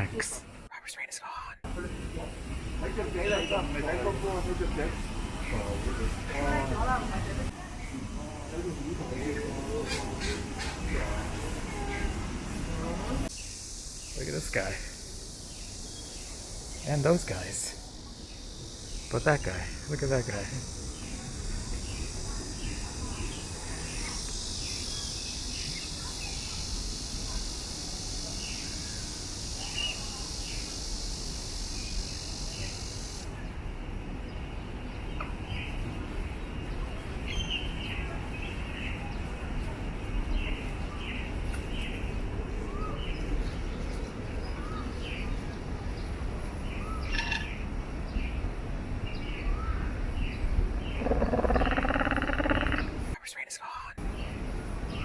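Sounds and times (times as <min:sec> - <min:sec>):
birds chirping: 0:00.0 - 0:14.8, 0:34.2 - 0:55.0
high-pitched insect drone: 0:23.9 - 0:33.3, 0:51.0 - 0:52.8
long bird call: 0:46.1 - 0:48.5, 0:49.3 - 0:53.2.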